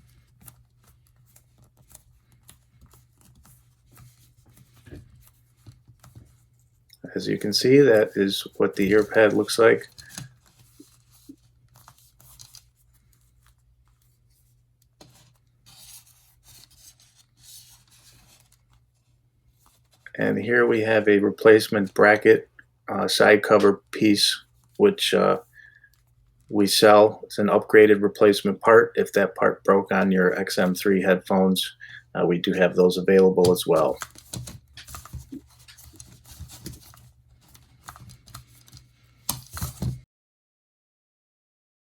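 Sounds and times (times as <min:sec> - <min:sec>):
handling plastic parts: 0:07.7 - 0:18.9, 0:33.4 - 0:40.0
plastic parts clicking and tapping: 0:33.4 - 0:40.0.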